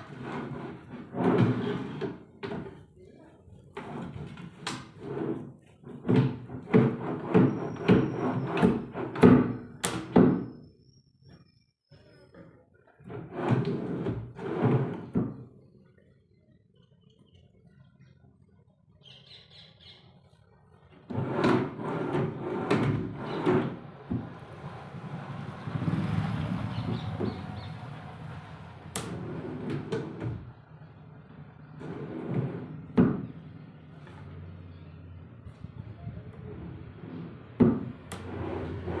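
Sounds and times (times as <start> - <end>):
wood sliding or scraping: 0.0 - 2.9, 3.6 - 10.5, 13.0 - 15.5, 20.9 - 30.6, 31.3 - 34.6, 36.6 - 39.0.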